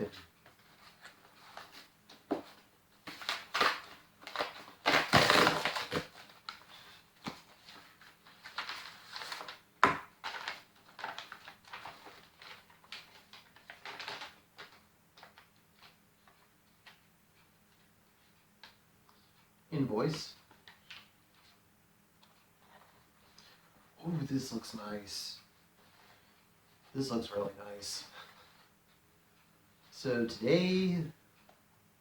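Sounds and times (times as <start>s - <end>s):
package tearing and crinkling: 3.2s - 6.1s.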